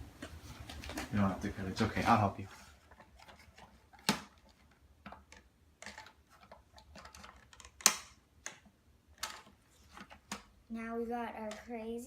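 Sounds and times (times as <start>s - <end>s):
plastic toy pieces clicking: 5.2s - 10.5s.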